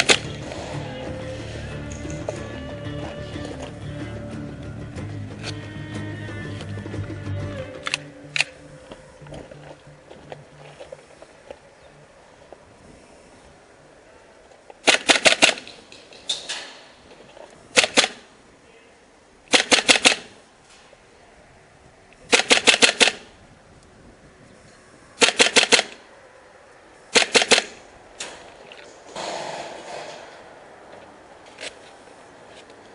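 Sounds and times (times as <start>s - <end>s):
airsoft gun shots: 0.0s - 0.4s, 14.8s - 15.8s, 17.7s - 18.3s, 19.5s - 20.4s, 22.3s - 23.3s, 25.2s - 26.0s, 27.1s - 28.4s, 29.2s - 30.2s.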